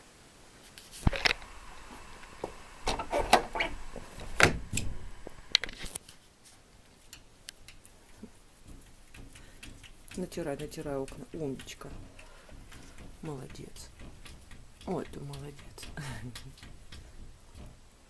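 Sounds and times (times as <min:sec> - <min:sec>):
cat pawing at window pane: 0:07.6 - 0:18.0.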